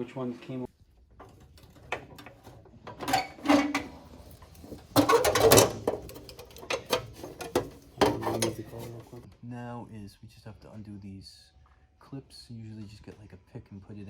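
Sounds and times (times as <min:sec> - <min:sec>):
metal car parts and tools clinking: 0:01.0 - 0:09.2.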